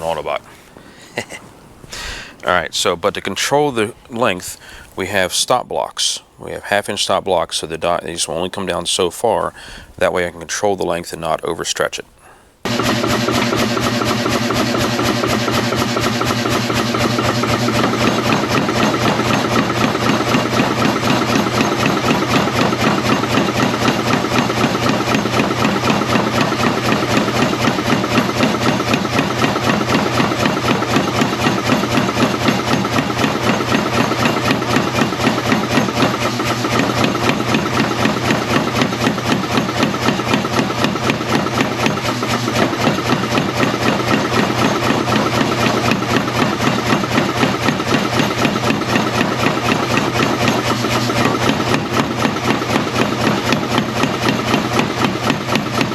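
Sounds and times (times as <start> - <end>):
power hammer blows: 12.6 - 55.9.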